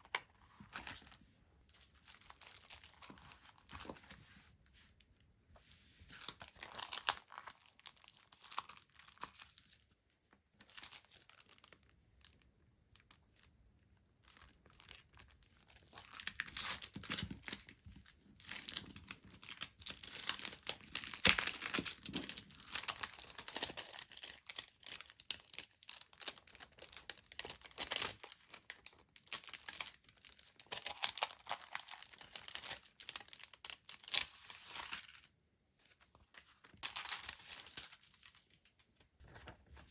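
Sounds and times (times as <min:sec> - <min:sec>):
packaging crinkling and rustling: 0:06.1 - 0:09.7, 0:14.4 - 0:39.9.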